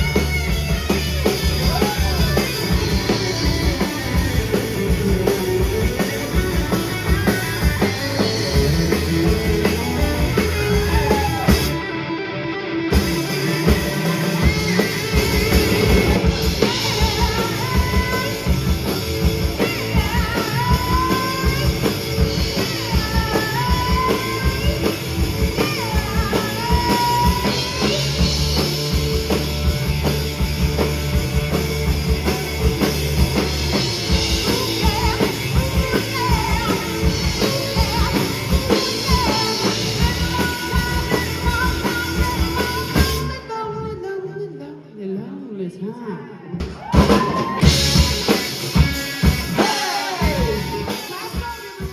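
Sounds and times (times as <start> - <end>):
drum kit: 0.0 - 43.4, 46.6 - 51.9
electric guitar: 0.0 - 44.8, 46.6 - 51.9
person singing: 1.6 - 12.1, 16.5 - 18.7, 19.6 - 28.3, 34.1 - 48.4, 49.5 - 51.9.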